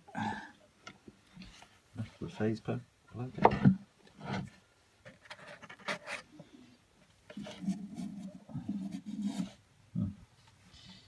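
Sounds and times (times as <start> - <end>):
clicks and scrapes of handling: 3.4 - 6.4, 7.3 - 9.6.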